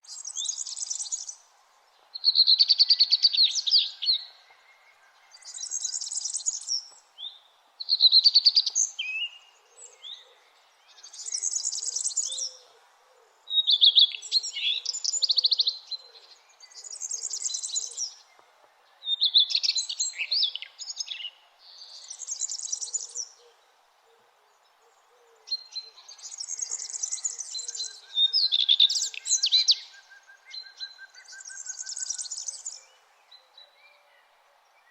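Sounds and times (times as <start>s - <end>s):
songbirds singing: 0.0s - 34.9s
distant bird calls: 7.9s - 34.9s.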